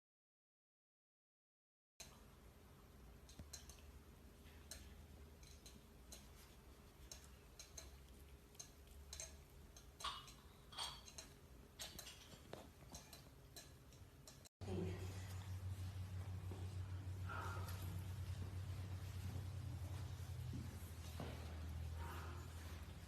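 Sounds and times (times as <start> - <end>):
soft irregular clicks: 2.0 - 14.5
faint low hum: 2.0 - 23.0.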